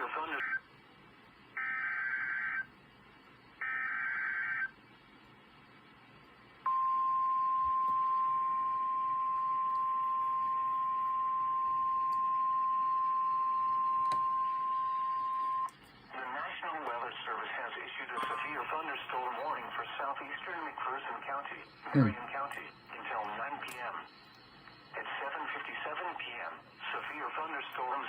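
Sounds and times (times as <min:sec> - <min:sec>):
steady high alarm tone: 0:06.7 - 0:15.7.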